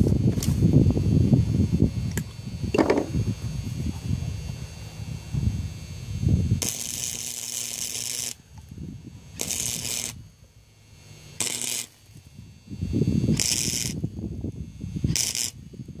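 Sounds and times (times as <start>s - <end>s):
faint steady hum: 0.0s - 16.0s
welding arc crackling hiss: 0.0s - 16.0s
low knocks and handling noise: 2.8s - 3.2s.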